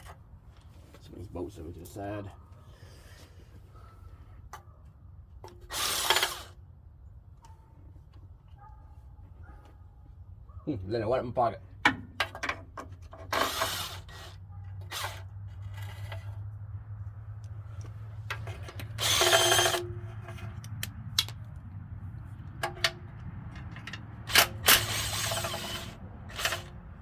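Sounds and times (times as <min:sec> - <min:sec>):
cordless power tool whirring: 0:05.7 - 0:06.6, 0:13.3 - 0:16.3, 0:18.3 - 0:20.1, 0:24.3 - 0:26.8.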